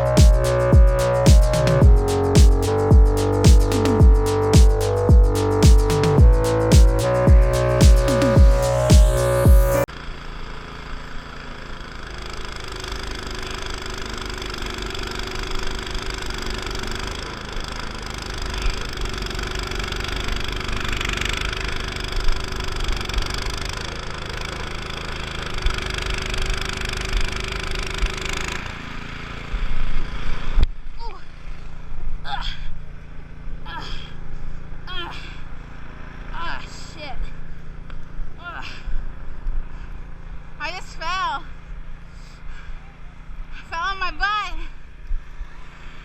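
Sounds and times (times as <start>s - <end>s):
snowblower engine running: 10.1s - 30.2s.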